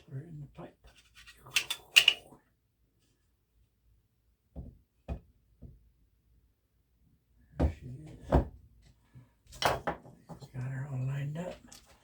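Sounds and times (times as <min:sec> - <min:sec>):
sharp clicks of rifle parts: 0:01.5 - 0:02.2.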